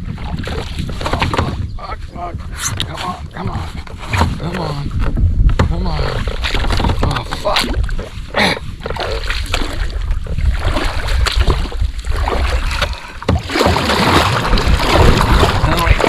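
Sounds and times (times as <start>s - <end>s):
water splashing: 0.0s - 1.7s, 5.7s - 16.0s
low rumble: 0.0s - 8.4s.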